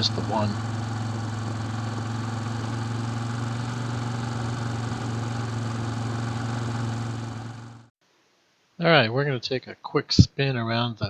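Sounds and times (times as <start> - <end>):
vehicle engine droning: 0.0 - 7.9.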